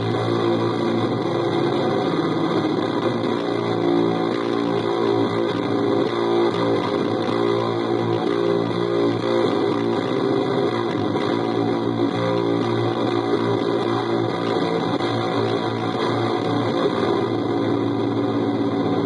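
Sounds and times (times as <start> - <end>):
fuzz-distorted electric guitar: 0.0 - 19.0.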